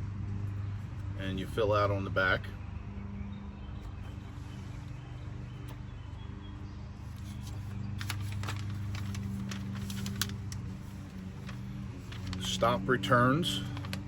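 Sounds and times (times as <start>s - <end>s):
steady low hum: 0.0s - 14.0s
packaging paper crinkling: 7.1s - 12.6s, 13.6s - 14.0s.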